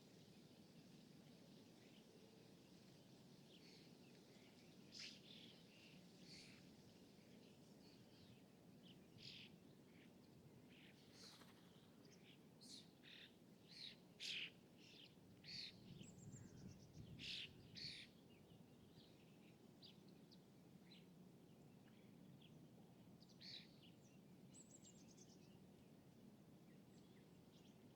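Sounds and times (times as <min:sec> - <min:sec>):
small birds chirping: 0:01.8 - 0:21.1.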